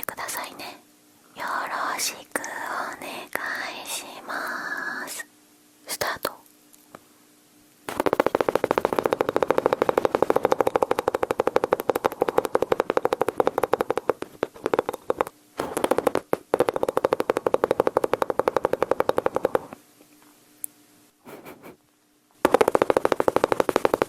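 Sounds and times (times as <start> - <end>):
mouth imitating machine-gun fire: 7.9 - 19.7, 22.4 - 24.0.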